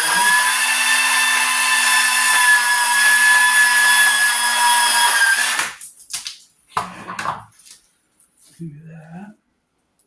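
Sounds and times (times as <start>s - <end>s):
wire stripping machine whine: 0.0s - 5.8s.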